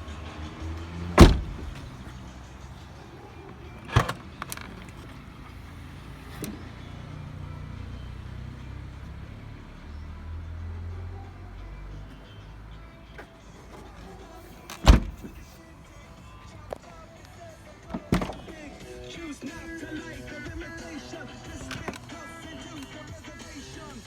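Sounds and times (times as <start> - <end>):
car thuds and knocks: 1.1 - 2.1, 14.8 - 15.5, 17.9 - 18.6.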